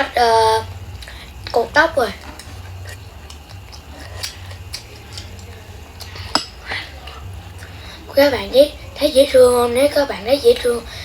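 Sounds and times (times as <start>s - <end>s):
steady low hum: 0.0s - 11.0s
utensils tapping dishes: 2.2s - 7.2s.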